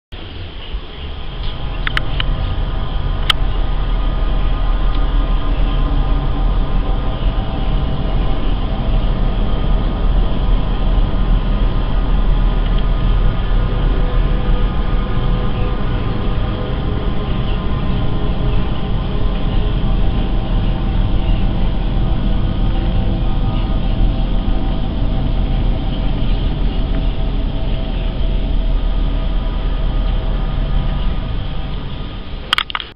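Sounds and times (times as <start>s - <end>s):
low rumbling drone: 0.1s - 32.9s
small clicks: 32.5s - 32.9s.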